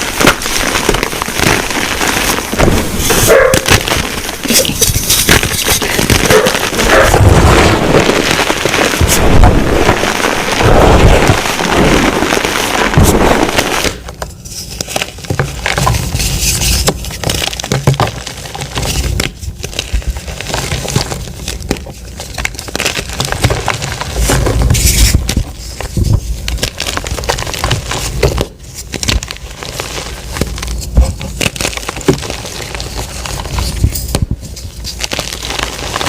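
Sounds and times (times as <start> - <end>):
chalk crunching by hand: 0.0 - 11.4.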